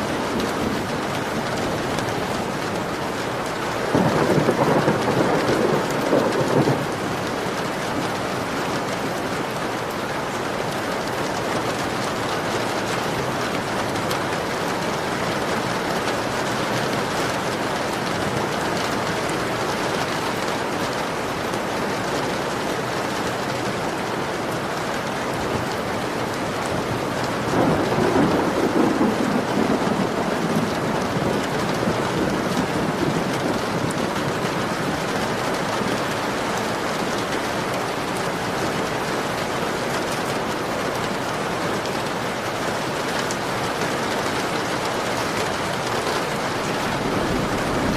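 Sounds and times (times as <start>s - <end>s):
thunder rumbling: 0.0s - 8.0s, 26.7s - 36.2s, 46.5s - 47.9s
heavy rain: 0.0s - 47.9s.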